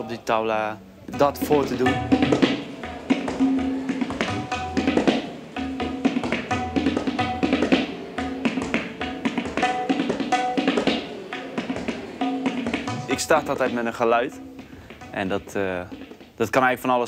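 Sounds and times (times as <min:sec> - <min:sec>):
tabla drum strokes: 0:00.0 - 0:17.0.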